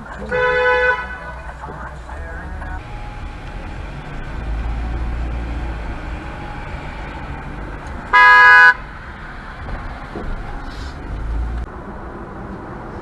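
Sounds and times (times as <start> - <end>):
car road and engine rumble: 0.0 - 13.0
car horn blast: 0.2 - 1.4, 2.8 - 10.6.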